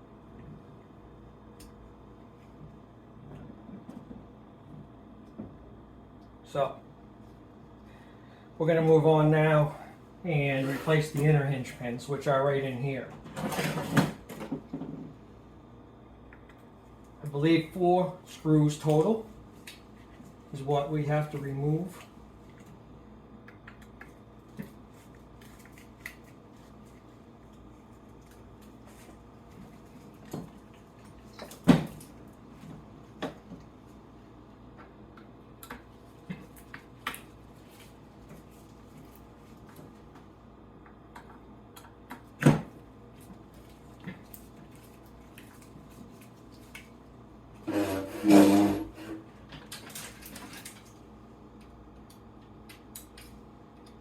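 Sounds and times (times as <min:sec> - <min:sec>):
faint steady hum: 0:00.0 - 0:54.0
clicks and knocks of tools: 0:51.6 - 0:54.0.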